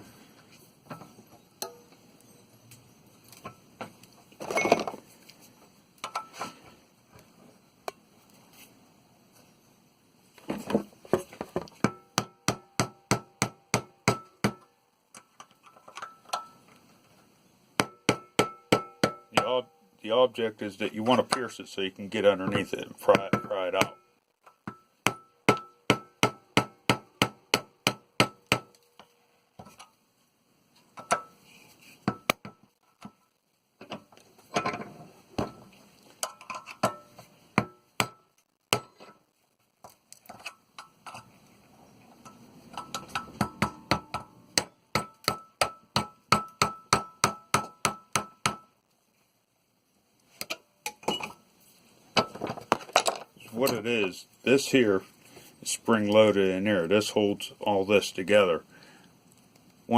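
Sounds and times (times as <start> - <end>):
hammer striking metal: 17.8 - 19.7, 42.7 - 48.7.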